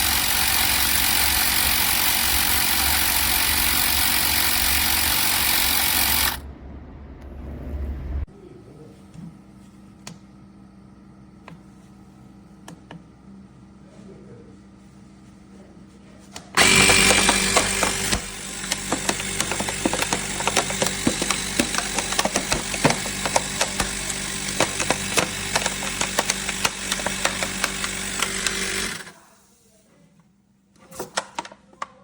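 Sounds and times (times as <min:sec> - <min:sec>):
mini tyre compressor running: 0:00.0 - 0:06.4, 0:16.6 - 0:29.3.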